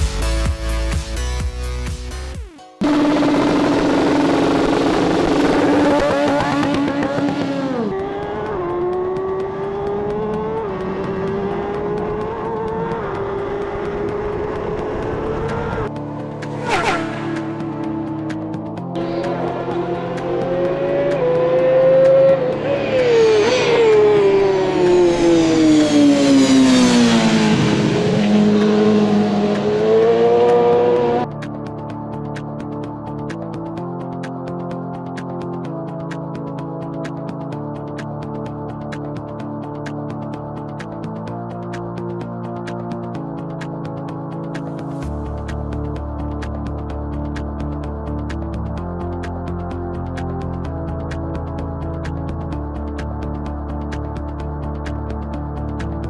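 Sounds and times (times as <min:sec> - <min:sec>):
music: 0:00.0 - 0:56.0
racing motorcycle engine revving: 0:02.8 - 0:31.3.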